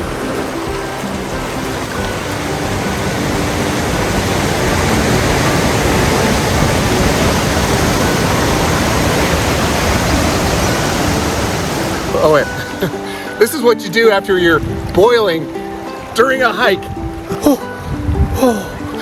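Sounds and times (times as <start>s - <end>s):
fast-flowing river water rushing: 0.0s - 19.0s.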